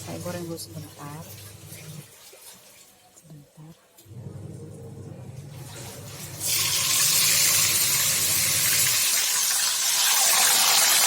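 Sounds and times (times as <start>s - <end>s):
fish sizzling in hot oil: 6.3s - 11.0s.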